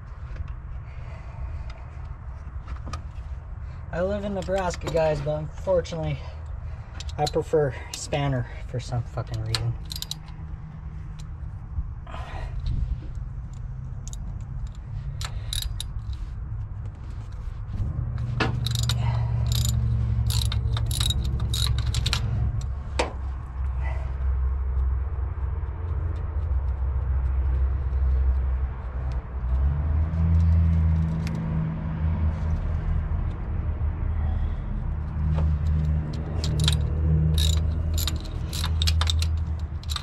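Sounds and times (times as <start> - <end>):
steady low rumble: 0.0 - 40.0
metal hand tools clinking: 9.3 - 10.3, 15.2 - 16.2, 18.5 - 22.4, 36.1 - 40.0.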